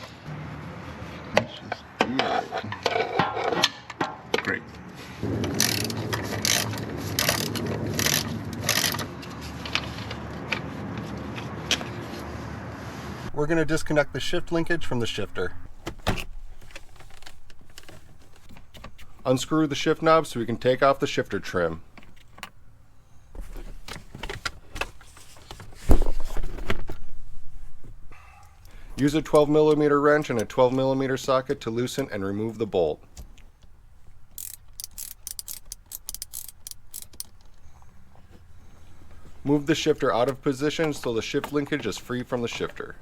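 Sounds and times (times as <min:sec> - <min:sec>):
ratchet wrench clicking: 0:05.6 - 0:09.0, 0:34.3 - 0:37.6.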